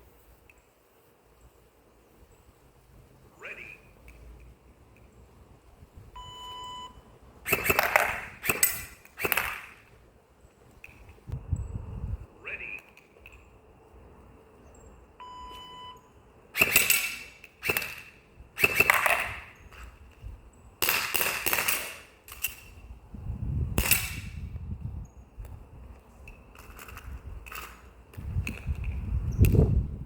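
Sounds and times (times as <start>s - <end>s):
short beep: 6.2s - 7.0s, 15.2s - 16.1s
airsoft gun shots: 7.5s - 9.9s, 16.6s - 19.6s, 20.8s - 22.1s, 23.8s - 24.4s.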